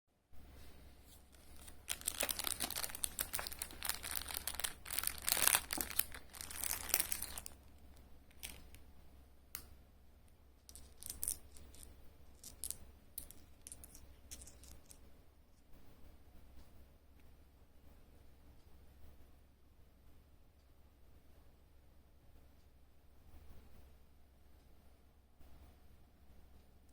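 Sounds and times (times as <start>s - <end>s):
faint low hum: 0.2s - 26.9s
plastic packaging crinkling and tearing: 1.3s - 7.7s, 8.3s - 8.8s, 10.7s - 15.0s.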